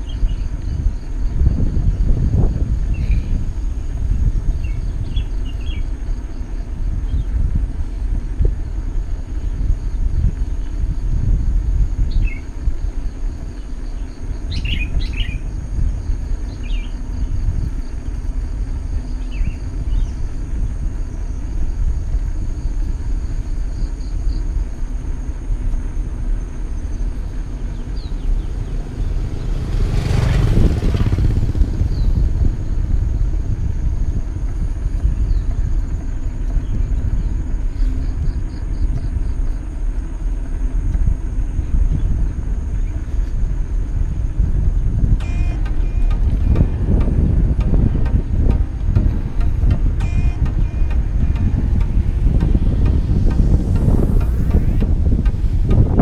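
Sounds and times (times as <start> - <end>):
steady low rumble: 0.0 - 56.0
small birds chirping: 2.7 - 8.2, 13.1 - 18.4
vehicle passing by: 27.5 - 33.6, 45.2 - 56.0.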